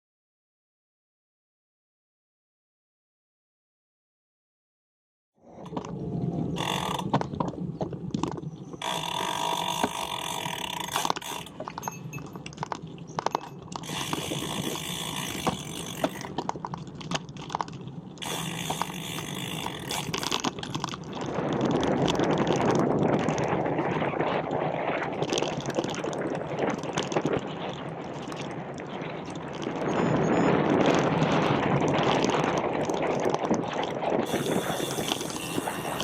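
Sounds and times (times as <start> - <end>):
road and wind rumble: 5.4 - 36.0
bicycle freewheel ticking: 6.6 - 7.1, 8.8 - 12.2, 13.8 - 16.3, 18.2 - 20.4, 34.2 - 36.0.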